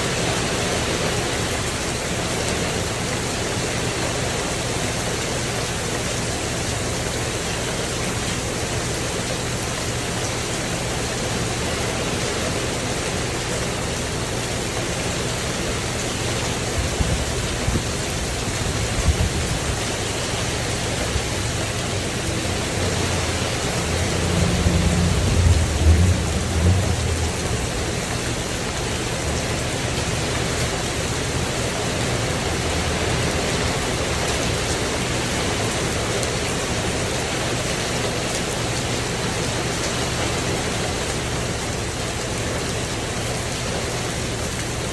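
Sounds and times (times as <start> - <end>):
rain on a tin roof: 0.0 - 44.9
thunder rumbling: 11.3 - 37.0.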